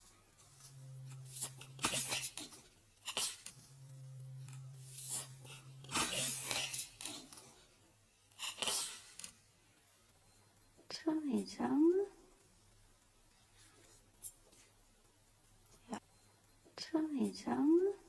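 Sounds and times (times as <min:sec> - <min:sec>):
low steady hum: 0:00.0 - 0:08.2.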